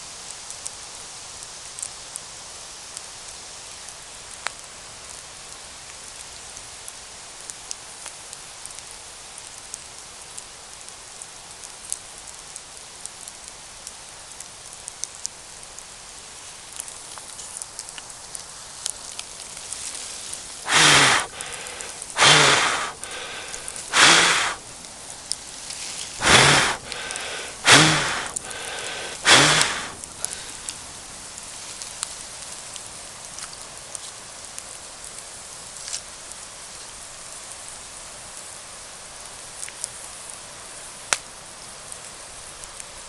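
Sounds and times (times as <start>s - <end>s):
campfire crackling and popping: 1.4s - 2.3s, 3.7s - 37.6s, 39.1s - 43.0s
loud rushing bursts: 20.7s - 24.6s, 26.2s - 30.0s.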